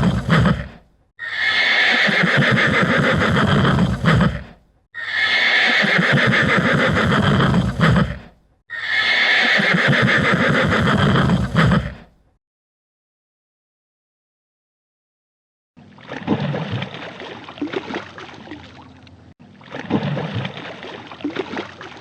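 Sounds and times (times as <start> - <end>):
loud animal call: 0.0 - 12.1.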